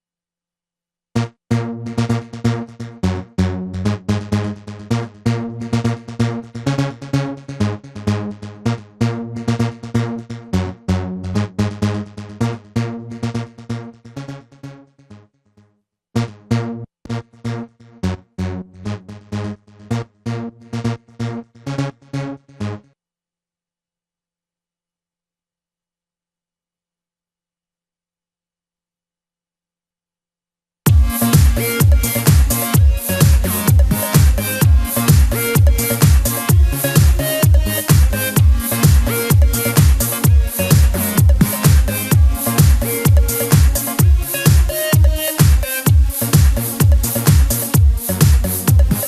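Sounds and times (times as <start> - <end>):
electronic music with drum machine: 30.9 - 49.0.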